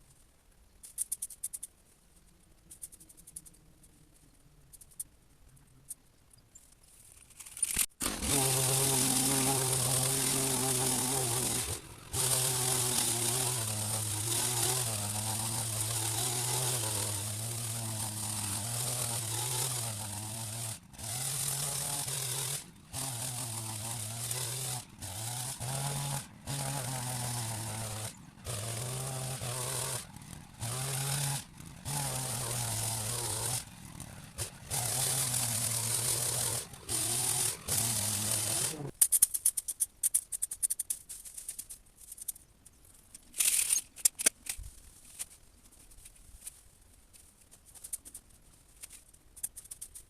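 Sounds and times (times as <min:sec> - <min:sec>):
hedge trimmer motor buzz: 0:08.0 - 0:38.9.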